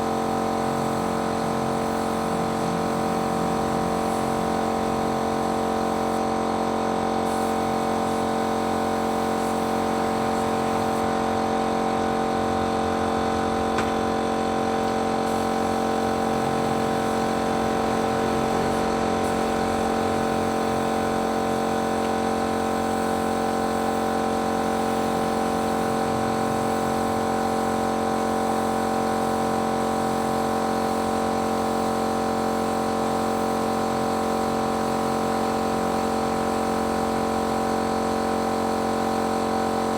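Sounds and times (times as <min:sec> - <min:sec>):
paint sprayer motor hum: 0:13.6 - 0:27.8.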